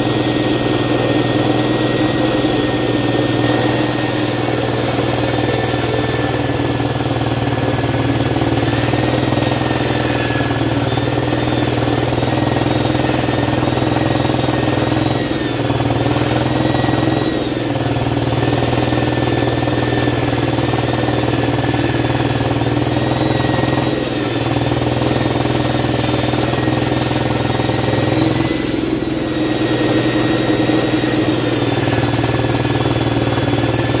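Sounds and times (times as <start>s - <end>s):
circular saw humming: 0.0s - 34.0s.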